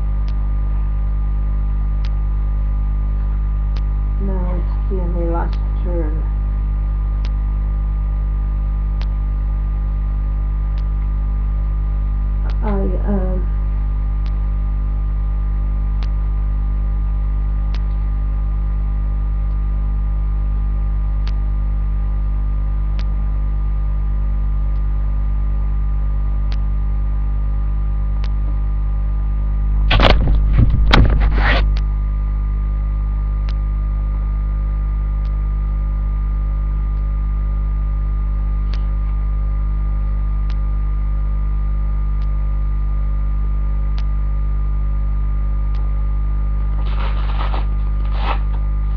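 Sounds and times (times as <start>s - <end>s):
electrical hum with tones: 0.0s - 48.9s.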